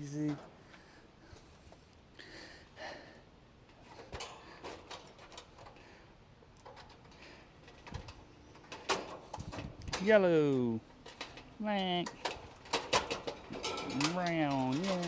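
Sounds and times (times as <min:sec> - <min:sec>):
hands clicking and tapping wiring: 0:06.5 - 0:15.0.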